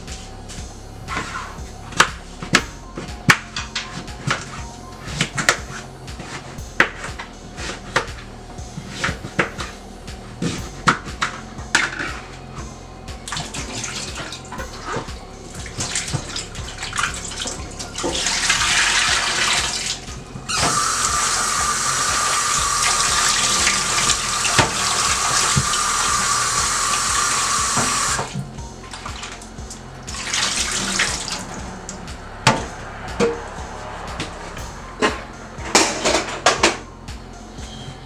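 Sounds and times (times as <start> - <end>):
kitchen tap running: 13.3 - 28.4.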